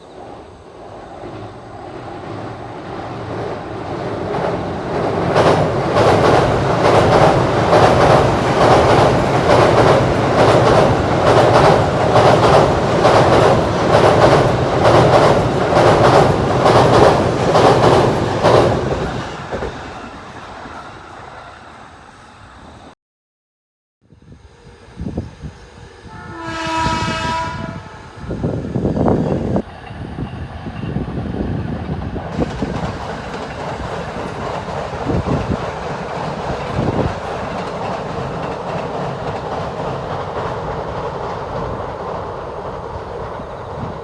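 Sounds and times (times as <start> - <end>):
electric train passing at speed: 0.0 - 23.0, 24.0 - 44.0
train wheels clattering: 4.3 - 21.0, 31.8 - 44.0.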